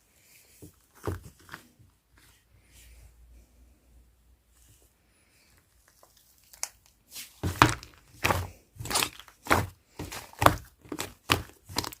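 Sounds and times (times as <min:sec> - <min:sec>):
slime squelching: 0:05.8 - 0:12.0.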